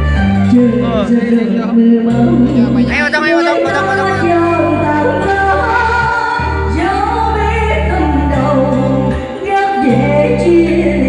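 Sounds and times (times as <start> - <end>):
ballad backing music: 0.0 - 11.0
person singing long notes: 0.5 - 11.0.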